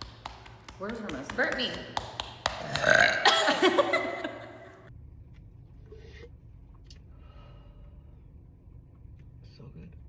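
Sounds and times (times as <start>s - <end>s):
girl burping: 2.7s - 3.7s.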